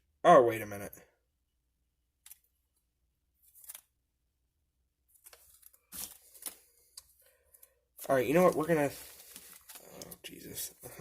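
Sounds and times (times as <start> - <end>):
packaging rustling: 5.1 - 10.5.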